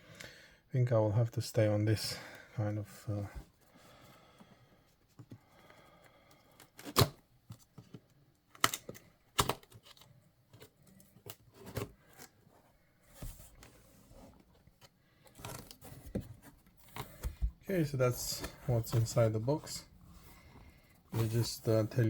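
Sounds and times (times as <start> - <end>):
cardboard scraping and rustling: 10.6 - 22.0.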